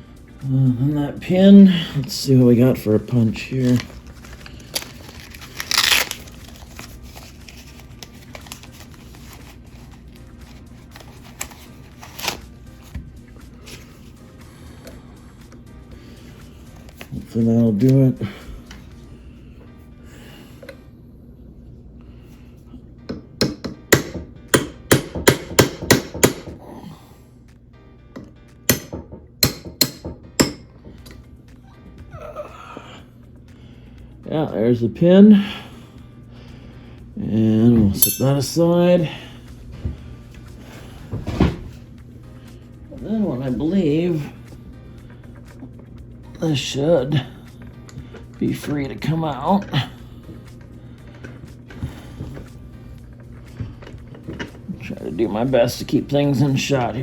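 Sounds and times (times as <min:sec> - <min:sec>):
tools rustling and clattering: 0:01.9 - 0:13.0, 0:37.8 - 0:38.7, 0:49.6 - 0:55.0
hammer striking a metal punch: 0:23.1 - 0:26.6, 0:28.2 - 0:30.7
sharp clinks of tools: 0:38.0 - 0:38.4.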